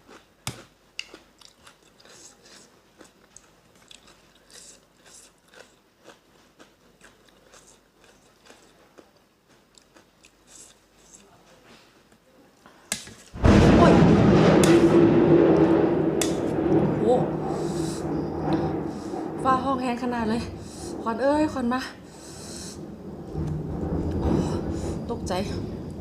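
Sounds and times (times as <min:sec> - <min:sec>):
person chewing crunchy food: 0:00.0 - 0:11.3.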